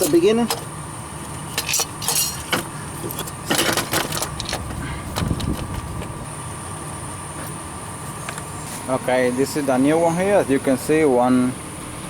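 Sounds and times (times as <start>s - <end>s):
metal tools clinking: 0.0s - 0.7s, 1.3s - 5.7s
metal parts rattling: 0.0s - 6.1s.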